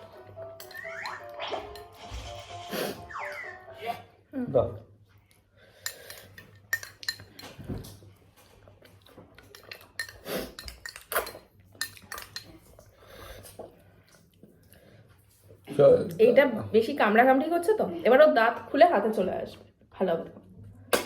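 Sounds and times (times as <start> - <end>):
plates and utensils clinking: 0.0 - 3.1, 9.2 - 12.8.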